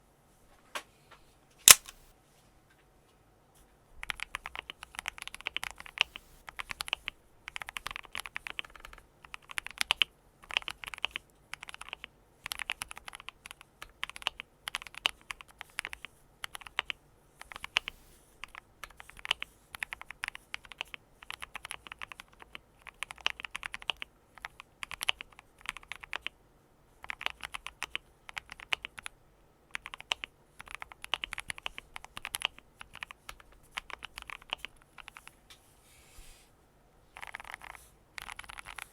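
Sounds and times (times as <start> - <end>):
mechanical keyboard typing: 1.7 - 1.9, 4.0 - 26.3, 27.0 - 35.3, 37.2 - 38.9.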